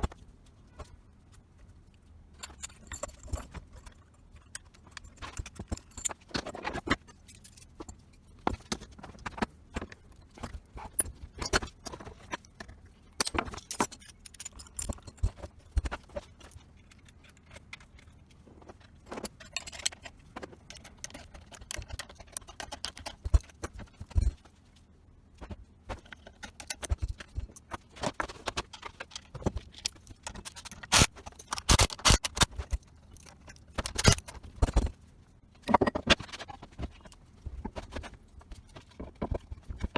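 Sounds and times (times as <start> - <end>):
metal parts and tools clinking: 2.4 - 8.7, 10.3 - 24.4, 25.4 - 35.0, 35.6 - 37.2.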